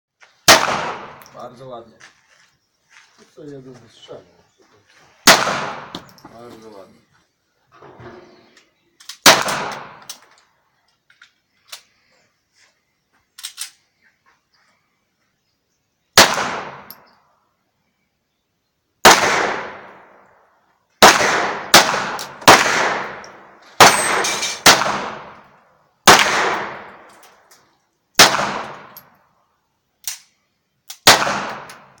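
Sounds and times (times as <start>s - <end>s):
pistol shots with echo: 0.5s - 1.4s, 5.2s - 6.2s, 9.2s - 10.1s, 16.2s - 17.0s, 19.0s - 20.2s, 21.0s - 27.1s, 28.2s - 29.1s, 30.9s - 32.0s.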